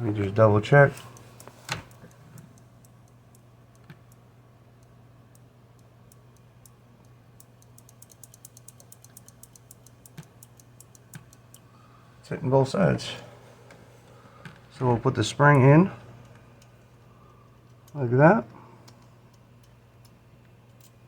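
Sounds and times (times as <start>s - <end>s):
steady low hum: 0.0s - 21.0s
light plastic clicks and ticks: 0.9s - 4.2s, 4.8s - 11.7s, 17.5s - 21.0s.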